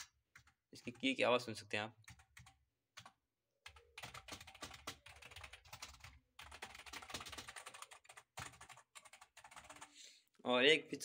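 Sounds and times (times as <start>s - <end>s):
fast typing on keyboard: 0.0s - 1.4s, 2.0s - 9.9s.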